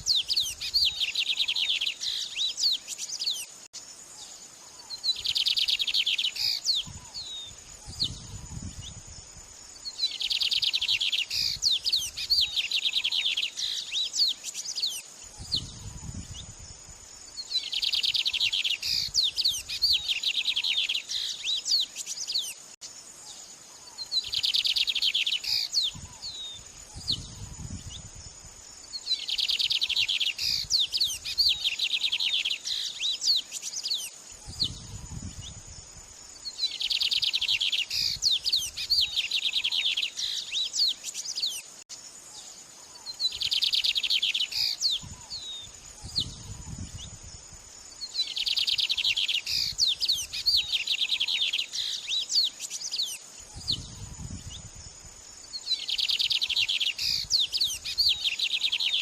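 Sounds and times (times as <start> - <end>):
songbird chirping: 0.0 - 59.0.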